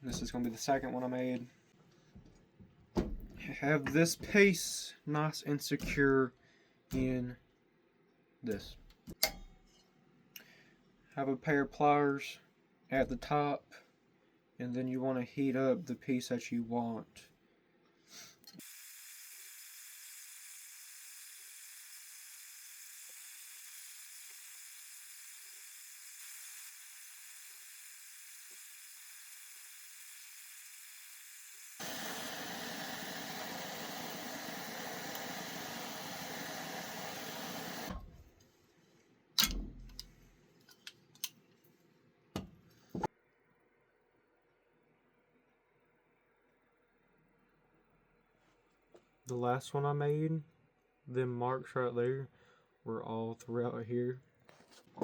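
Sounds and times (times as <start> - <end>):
torch flame hissing: 18.6 - 38.4.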